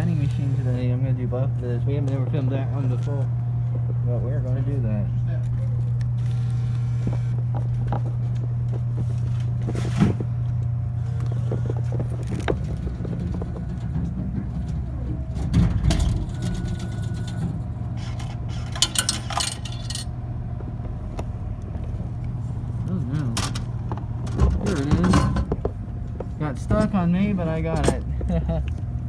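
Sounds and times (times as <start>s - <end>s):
vending machine humming: 0.0s - 29.0s
jangling rattle of clicks: 18.2s - 20.1s, 27.7s - 28.8s.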